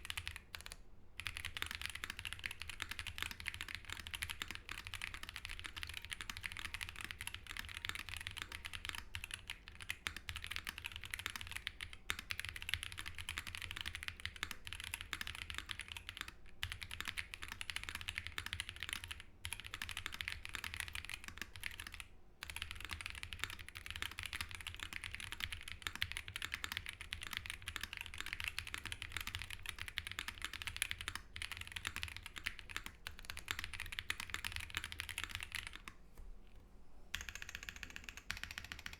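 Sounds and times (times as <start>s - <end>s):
mechanical keyboard typing: 0.0s - 36.0s, 37.1s - 38.9s.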